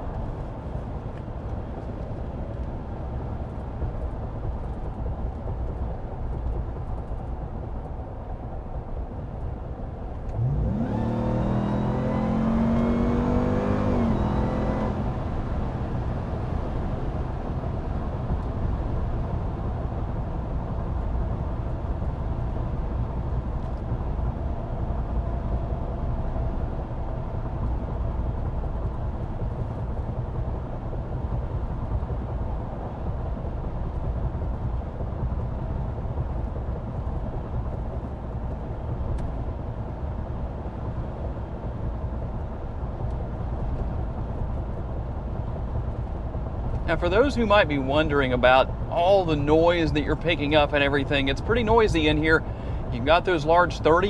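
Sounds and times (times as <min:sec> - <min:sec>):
tyre road rumble in cabin: 0:00.0 - 0:54.0
engine revving: 0:10.3 - 0:15.3.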